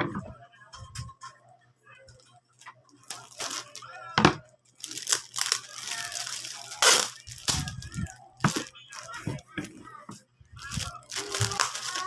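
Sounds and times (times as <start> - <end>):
plastic packaging crinkling and tearing: 3.0 - 3.9, 4.8 - 9.3, 10.6 - 12.0.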